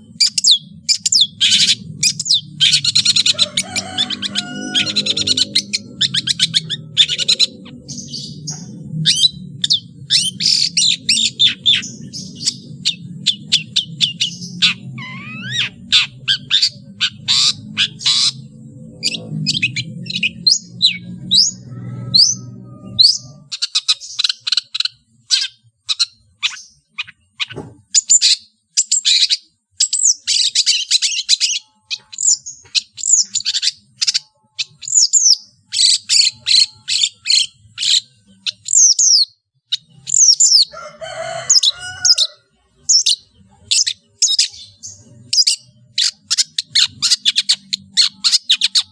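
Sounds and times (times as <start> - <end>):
bird singing varied song: 0.0 - 48.9.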